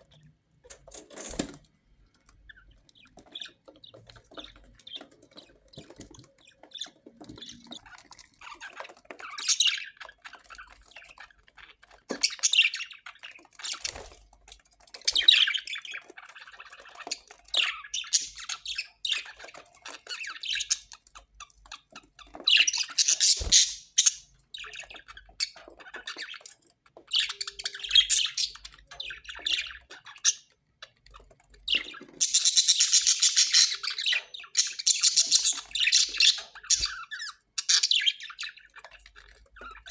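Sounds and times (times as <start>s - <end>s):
parrots squawking: 22.5s - 24.8s, 31.8s - 38.6s.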